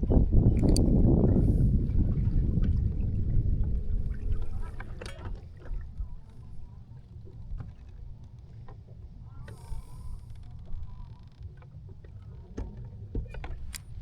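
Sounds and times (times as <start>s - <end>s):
boat engine rumble: 0.0s - 14.0s
light clicks: 0.6s - 0.9s, 13.3s - 14.0s.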